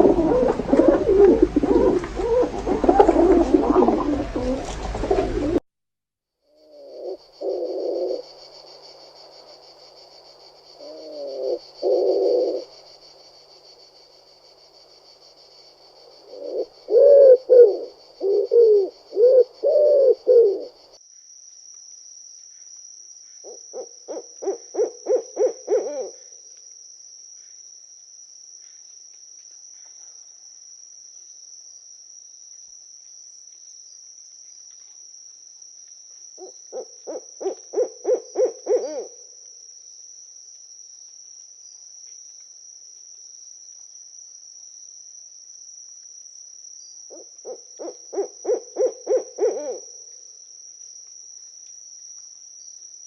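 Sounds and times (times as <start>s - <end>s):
high insect trill: 0.0s - 5.6s, 6.4s - 53.0s
owl hooting: 0.0s - 5.6s, 6.6s - 8.3s, 10.8s - 12.7s, 16.2s - 20.8s, 23.4s - 26.3s, 36.4s - 39.2s, 47.1s - 50.0s.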